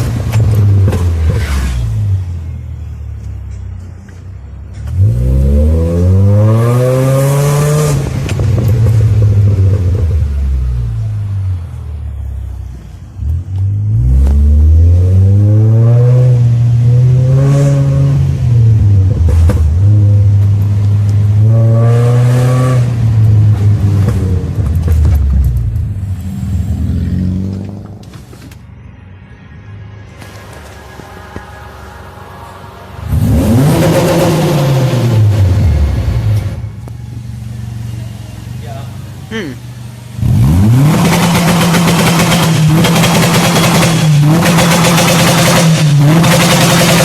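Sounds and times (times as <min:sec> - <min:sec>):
car engine revving: 0:04.7 - 0:47.0
exhaust pops: 0:22.8 - 0:26.3.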